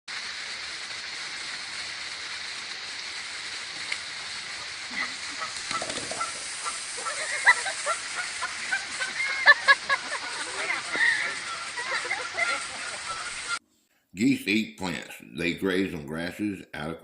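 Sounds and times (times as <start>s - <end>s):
steady hiss: 0.1s - 13.6s
geese honking: 3.7s - 13.6s.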